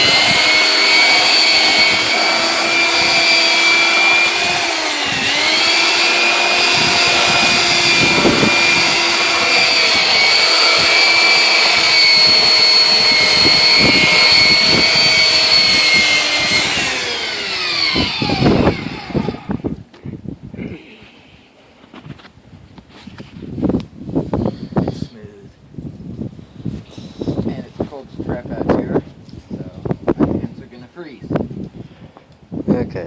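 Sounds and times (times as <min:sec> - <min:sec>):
belt sander whining: 0:00.0 - 0:19.8.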